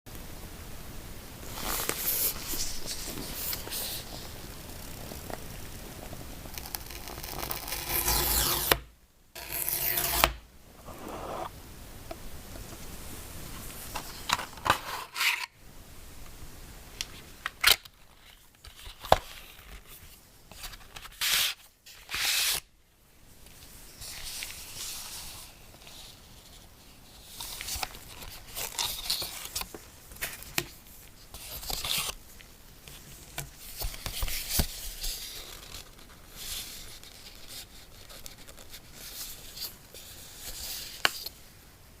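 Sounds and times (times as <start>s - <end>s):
paper and cardboard rustling: 1.5s - 4.4s.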